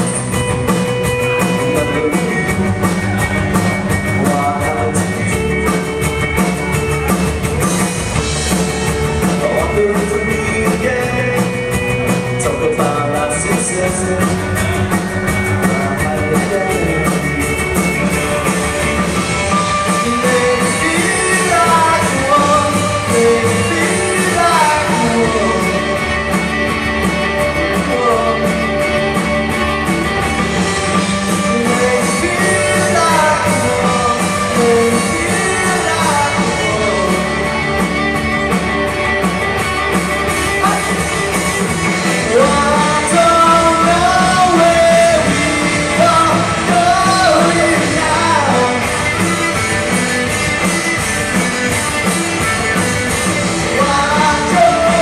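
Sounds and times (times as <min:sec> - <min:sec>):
rock band playing live: 0:00.0 - 0:55.0
lead vocal singing: 0:01.4 - 0:06.0, 0:08.7 - 0:18.5, 0:19.4 - 0:26.5, 0:27.3 - 0:29.1, 0:30.6 - 0:38.1, 0:42.0 - 0:49.4, 0:53.6 - 0:55.0.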